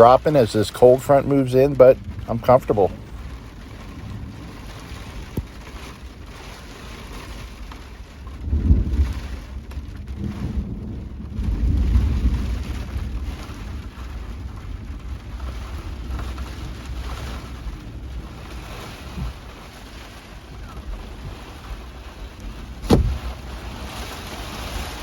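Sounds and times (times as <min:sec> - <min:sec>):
rain beating on a truck shell: 0:00.0 - 0:25.0
thunder rumbling: 0:00.0 - 0:25.0
wind: 0:00.0 - 0:25.0.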